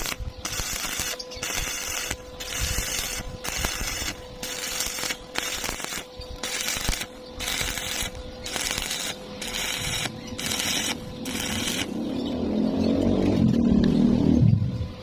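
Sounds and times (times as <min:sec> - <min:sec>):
welding arc crackling: 0:00.0 - 0:12.0.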